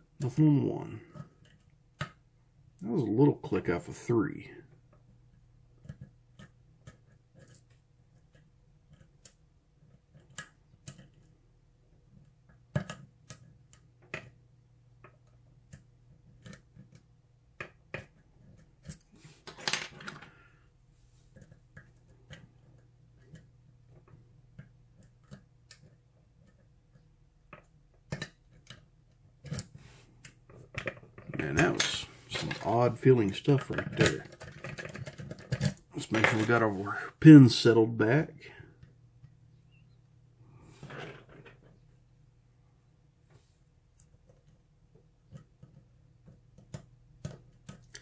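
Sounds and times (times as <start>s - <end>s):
lock pick clicking and tapping: 45.3s - 48.0s.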